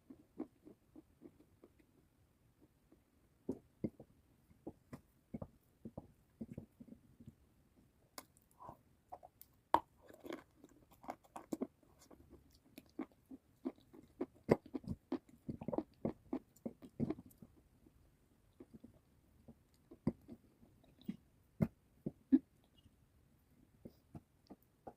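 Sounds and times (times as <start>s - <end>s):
person chewing crunchy food: 8.2s - 17.6s.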